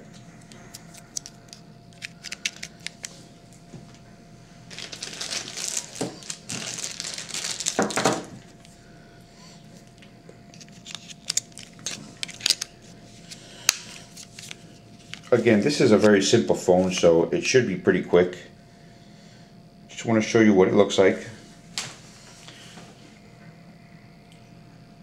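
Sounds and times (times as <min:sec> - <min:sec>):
plastic crinkling: 0:00.7 - 0:03.2, 0:04.7 - 0:08.4, 0:10.5 - 0:16.1.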